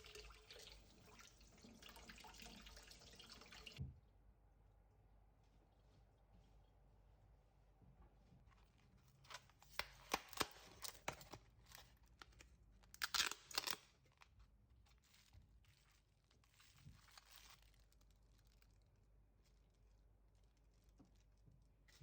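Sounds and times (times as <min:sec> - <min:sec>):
packaging being torn and crinkled: 0:09.3 - 0:21.4.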